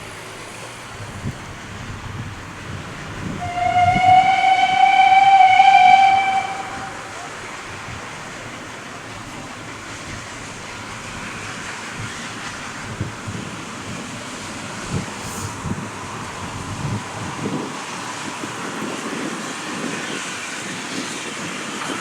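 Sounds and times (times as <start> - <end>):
steam locomotive whistle: 3.3 - 7.6.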